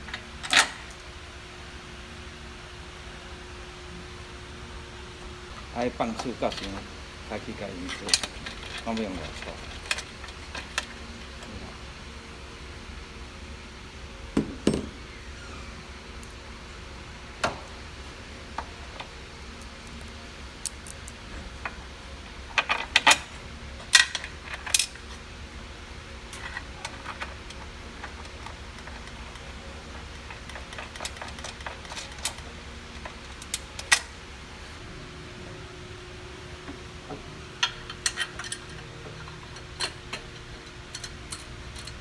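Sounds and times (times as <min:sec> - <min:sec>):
steady low hum: 0:00.0 - 0:42.0
metal tools clinking: 0:26.4 - 0:34.0, 0:37.6 - 0:42.0.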